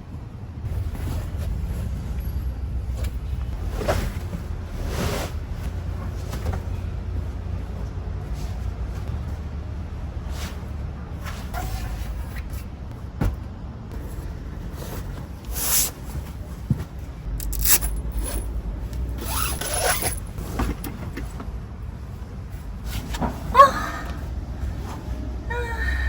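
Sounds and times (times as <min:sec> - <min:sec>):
scraping rustling handling noises: 0:14.7 - 0:21.4
low rumble: 0:17.0 - 0:20.6.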